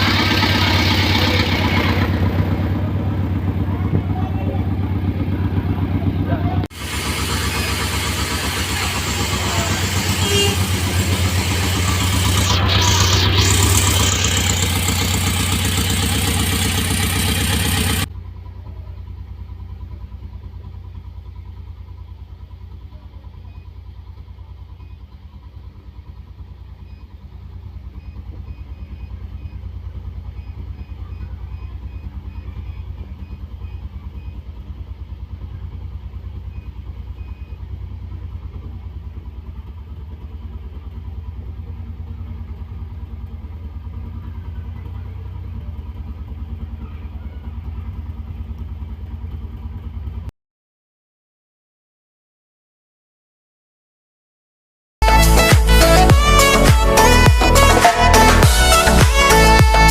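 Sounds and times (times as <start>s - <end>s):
car engine idling: 0.0s - 50.3s, 55.0s - 59.9s.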